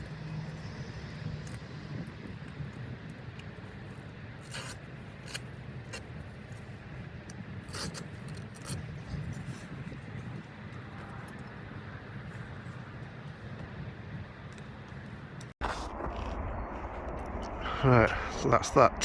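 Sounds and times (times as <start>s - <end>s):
low steady drone: 0.0s - 5.8s, 15.6s - 19.0s.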